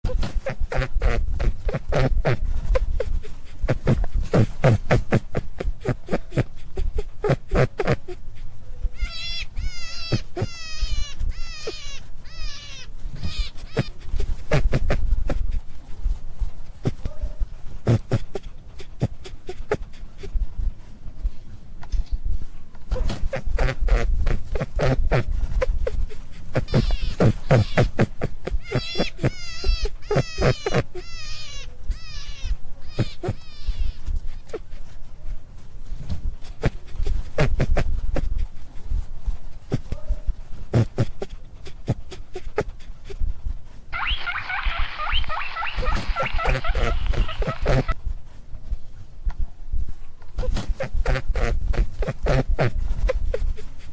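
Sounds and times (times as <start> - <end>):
rabbit clicking grunts: 0.1 - 15.5, 16.8 - 20.4, 22.9 - 34.9, 36.4 - 38.5, 39.6 - 43.2, 45.0 - 48.0, 50.5 - 53.9
rabbit high wavering squeals: 5.8 - 15.0, 23.0 - 34.6, 43.9 - 48.0.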